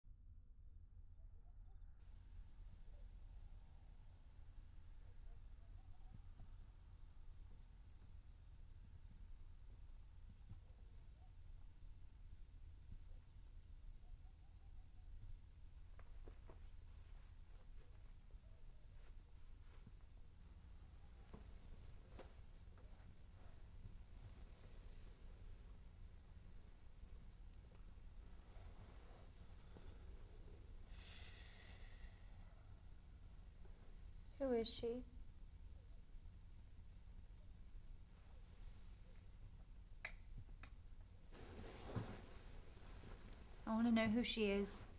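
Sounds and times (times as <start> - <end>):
insect chirping: 0.2 - 44.9.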